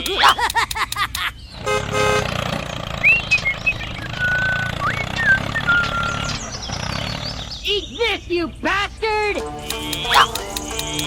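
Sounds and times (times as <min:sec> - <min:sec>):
horn toot: 0:01.6 - 0:02.4
whistling glides: 0:03.0 - 0:06.7.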